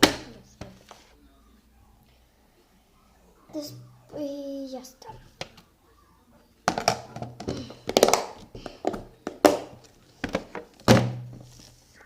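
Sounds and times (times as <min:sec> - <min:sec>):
plastic containers and lids clicking: 0:06.6 - 0:11.4.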